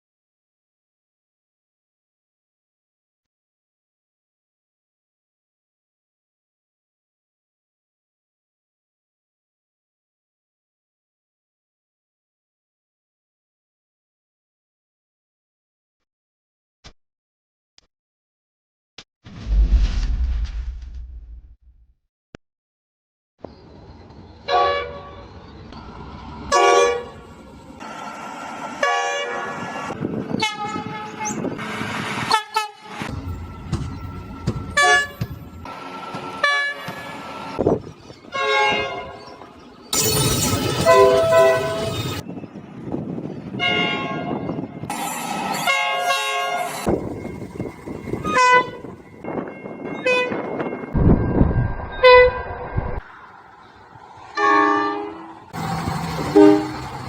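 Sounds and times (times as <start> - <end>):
train horns blasting: 24.4 - 25.4, 26.5 - 27.3, 28.7 - 37.6, 38.3 - 39.4, 40.8 - 42.2, 43.6 - 44.8, 45.5 - 46.9, 48.2 - 49.0, 50.0 - 50.5, 52.0 - 52.6, 54.2 - 57.0.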